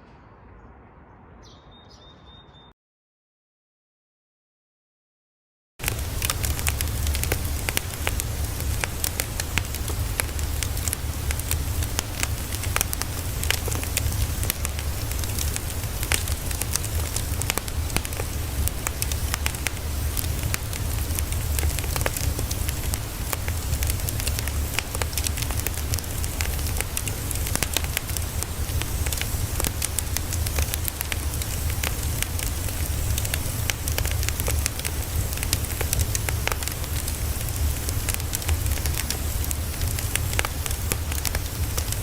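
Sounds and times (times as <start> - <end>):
low rumble: 0.0 - 2.5
fire crackling and popping: 5.8 - 42.0.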